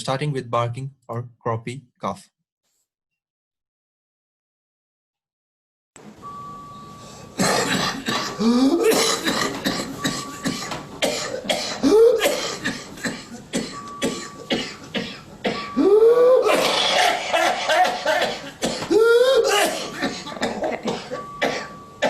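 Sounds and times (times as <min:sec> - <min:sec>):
high-pitched indrawn breaths: 0:06.6 - 0:08.8, 0:15.2 - 0:17.7
barking croupy cough: 0:07.4 - 0:15.8, 0:16.4 - 0:21.8.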